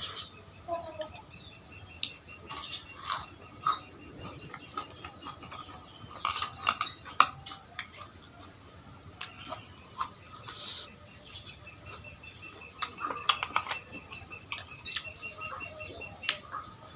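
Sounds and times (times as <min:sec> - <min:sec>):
chewing: 0:02.0 - 0:16.7
utensils clinking against bowl: 0:02.5 - 0:08.2.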